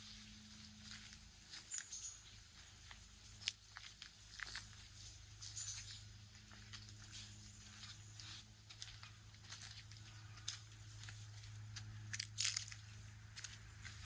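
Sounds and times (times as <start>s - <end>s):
low steady hum: 0.0s - 14.0s
soft crunching footsteps: 0.0s - 14.0s.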